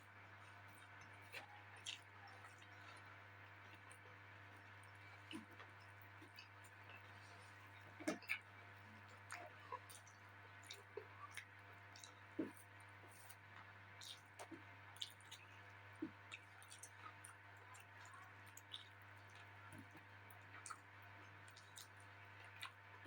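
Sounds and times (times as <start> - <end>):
low steady hum: 0.0 - 23.0
mouth chewing: 0.7 - 22.8.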